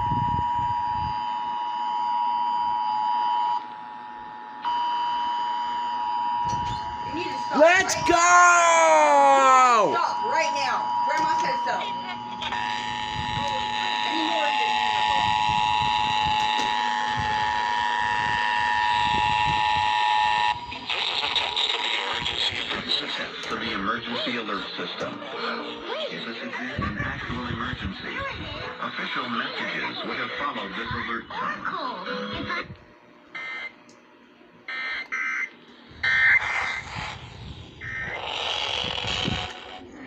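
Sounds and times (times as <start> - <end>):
two-tone alarm: 0.0 - 8.0, 9.9 - 22.3, 33.4 - 33.8, 34.7 - 39.5.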